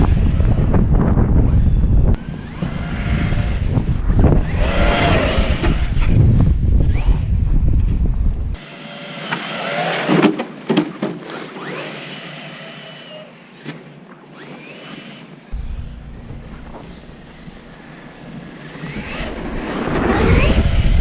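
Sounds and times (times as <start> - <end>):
electric motor whining: 0.0 - 7.6, 14.4 - 21.0
wind buffeting microphone: 0.0 - 8.6, 15.6 - 21.0.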